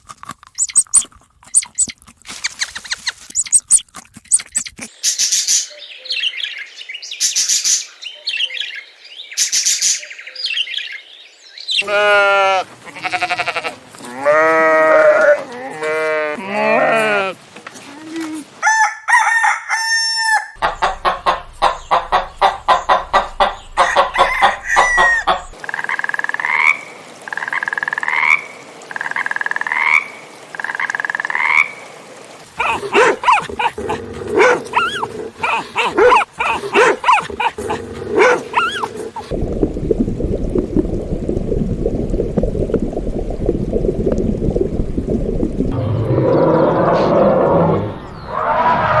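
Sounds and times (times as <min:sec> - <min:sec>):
rapid animal calls: 0:32.5 - 0:39.3
rising animal calls: 0:32.5 - 0:39.4, 0:45.7 - 0:49.0.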